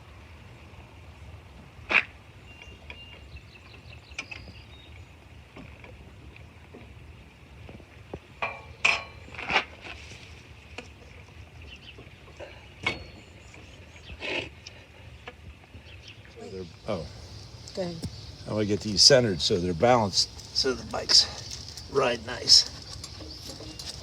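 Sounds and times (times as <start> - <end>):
metal clinks and knocks: 8.4 - 9.6
metal clanks: 8.4 - 9.7, 12.3 - 13.4.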